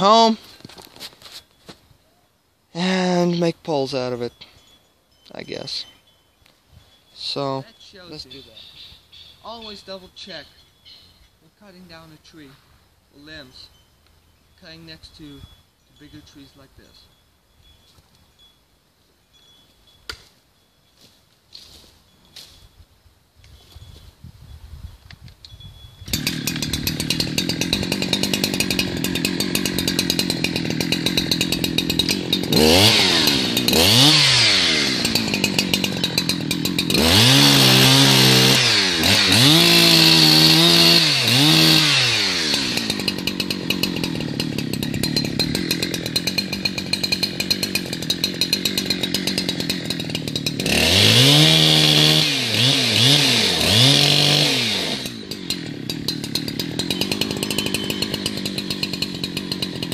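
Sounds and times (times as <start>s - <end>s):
chainsaw idling and revving: 26.1s - 59.9s.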